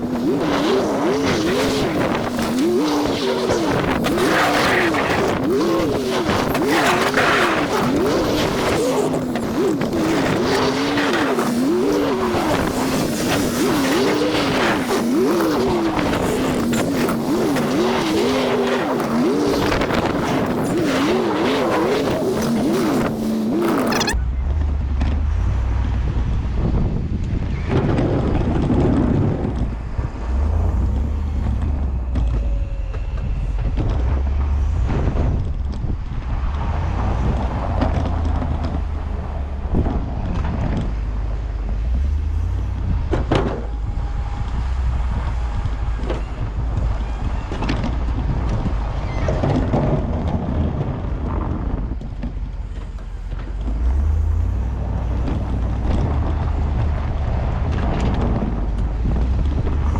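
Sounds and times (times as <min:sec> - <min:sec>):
vehicle engine rumble: 0:00.0 - 0:59.9
wind buffeting microphone: 0:24.1 - 0:59.9.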